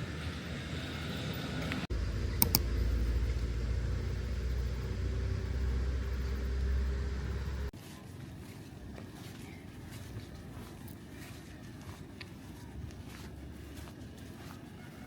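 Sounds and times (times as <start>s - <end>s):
vehicle engine rumbling: 0.0s - 7.8s
sharp clicks: 2.3s - 3.4s.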